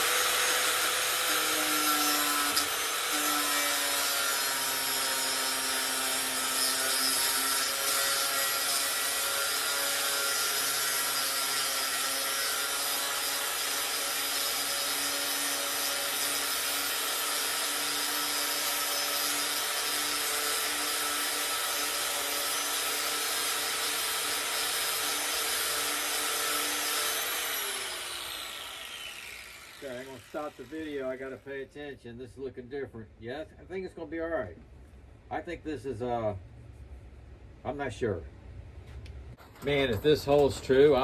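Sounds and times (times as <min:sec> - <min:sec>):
rasping grinding: 0:00.0 - 0:31.3
rotary tool motor whine: 0:12.0 - 0:30.9.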